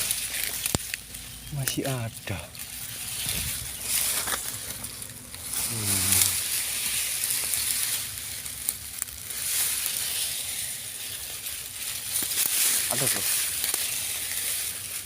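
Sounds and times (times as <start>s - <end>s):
dry leaves crackling underfoot: 0.0s - 15.0s
twigs snapping: 0.0s - 15.0s
low human murmur: 5.6s - 6.4s.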